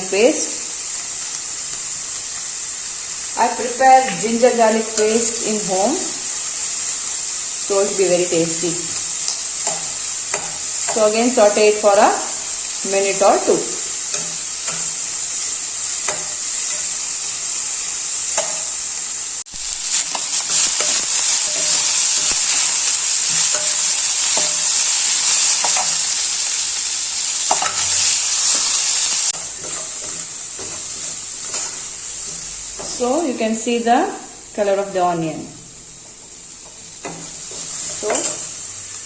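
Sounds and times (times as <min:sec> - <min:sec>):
onions sizzling in hot oil: 0:00.0 - 0:39.0
spoon scraping and tapping pan: 0:09.6 - 0:11.0, 0:18.3 - 0:18.6, 0:27.5 - 0:28.6, 0:36.0 - 0:38.6.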